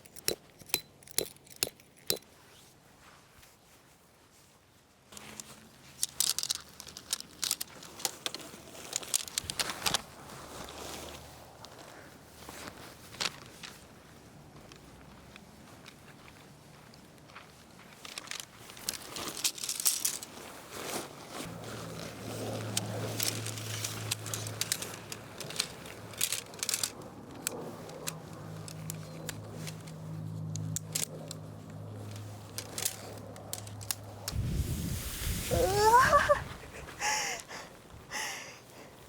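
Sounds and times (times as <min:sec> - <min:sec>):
crinkling: 0:05.1 - 0:14.2, 0:16.9 - 0:39.0
small objects clinking and rattling: 0:05.2 - 0:09.9, 0:18.0 - 0:20.5, 0:22.7 - 0:29.9.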